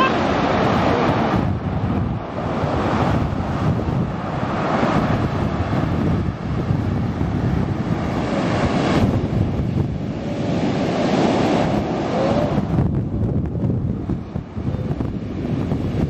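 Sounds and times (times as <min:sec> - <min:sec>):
waves breaking on pebble beach: 0:00.0 - 0:12.8
wind buffeting microphone: 0:00.0 - 0:16.0.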